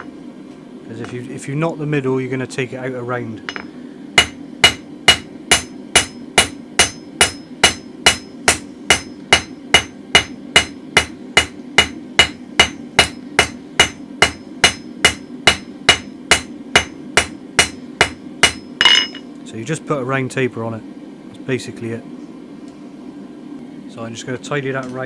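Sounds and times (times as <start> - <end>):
hammer striking steel on anvil: 3.4 - 19.2.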